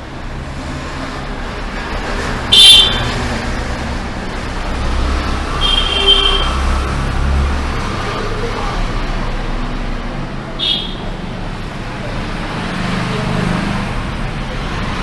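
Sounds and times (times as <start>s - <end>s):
street traffic: 0.0s - 15.0s
vehicle horn toot: 2.5s - 3.1s, 5.6s - 6.6s, 10.6s - 11.1s.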